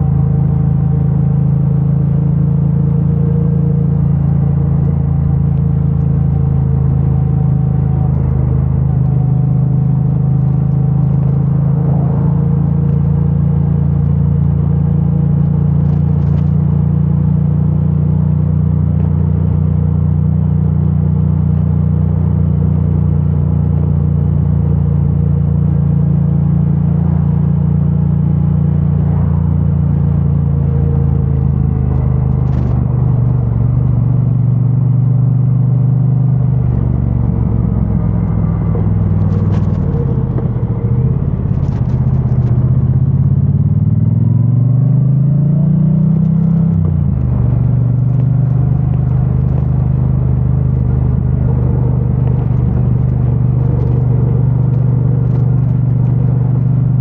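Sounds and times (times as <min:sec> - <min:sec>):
motorcycle engine revving: 0:29.9 - 0:57.0.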